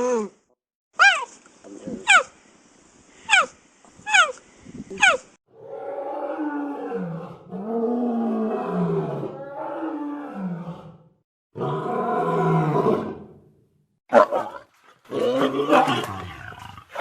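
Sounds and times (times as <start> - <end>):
big cat roaring: 5.5 - 13.4, 14.2 - 17.0.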